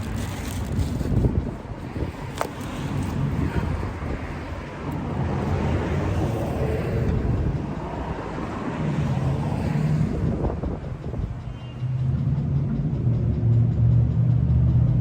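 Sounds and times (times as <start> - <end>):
wind buffeting microphone: 0.0 - 11.6.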